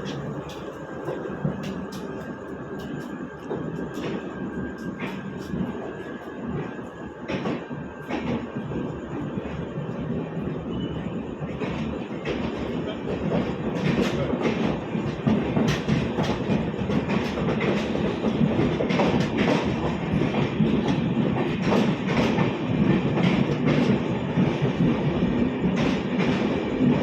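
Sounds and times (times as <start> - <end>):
train rumbling on track: 0.0 - 27.0.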